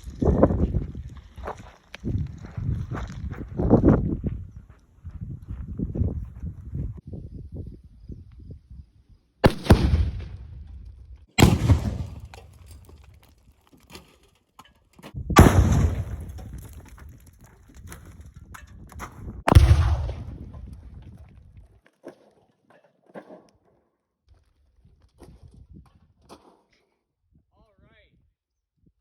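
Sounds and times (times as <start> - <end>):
loud explosion blasts: 9.4 - 10.8, 11.4 - 12.4, 15.3 - 16.7, 19.5 - 21.1.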